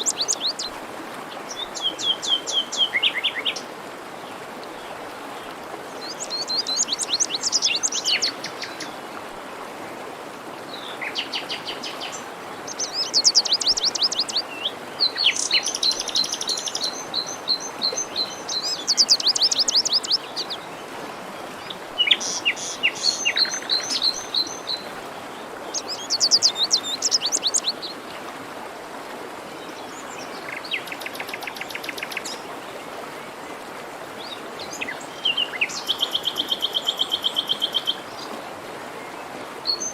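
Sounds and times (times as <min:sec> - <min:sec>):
songbirds trilling: 0:00.0 - 0:00.7, 0:12.6 - 0:20.6, 0:25.7 - 0:27.8
stream rushing: 0:00.0 - 0:39.9.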